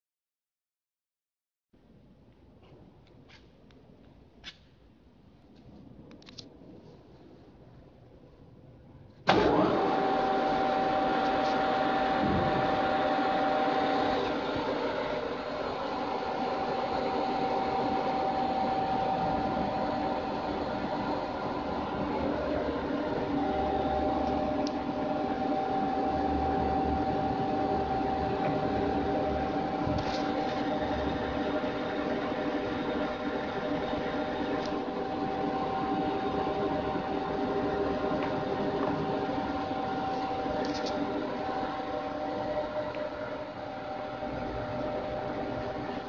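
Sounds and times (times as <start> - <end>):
low hum: 3.9 - 46.0
lathe motor whining: 9.3 - 46.0.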